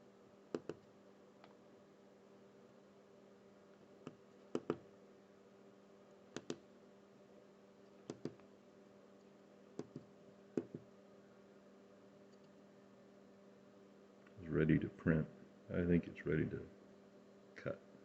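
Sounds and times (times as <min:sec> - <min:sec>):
faint steady hum: 0:00.0 - 0:18.0
computer mouse clicking: 0:00.5 - 0:00.9, 0:04.0 - 0:04.8, 0:06.3 - 0:06.6, 0:08.0 - 0:08.5, 0:09.8 - 0:10.8.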